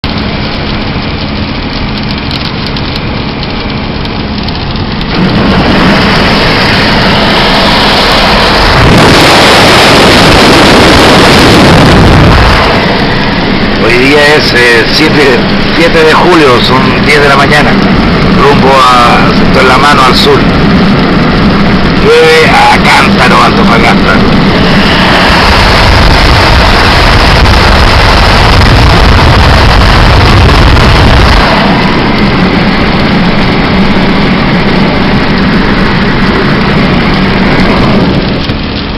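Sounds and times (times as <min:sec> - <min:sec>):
car engine hum: 0:00.0 - 0:38.9
road and wind rush: 0:00.0 - 0:38.9
tyre hiss on wet road: 0:05.1 - 0:11.8.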